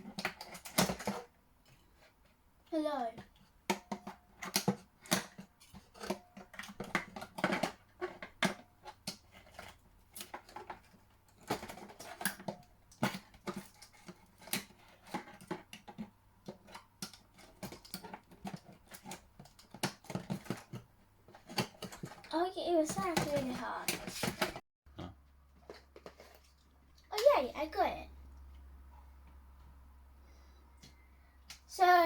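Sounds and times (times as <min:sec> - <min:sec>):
plastic toy clicking and rattling: 0:03.7 - 0:24.6.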